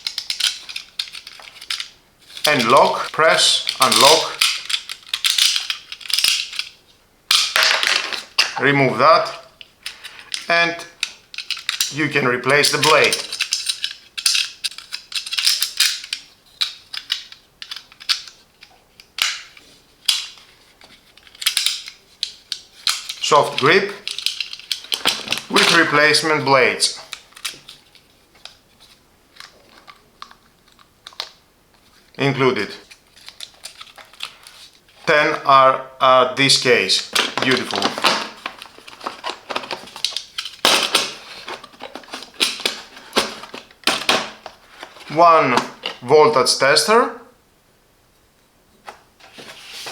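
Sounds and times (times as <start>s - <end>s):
tools clicking in plastic case: 21.2s - 25.9s, 37.1s - 46.0s
plastic and metal scrapes: 37.2s - 45.1s, 49.2s - 49.9s.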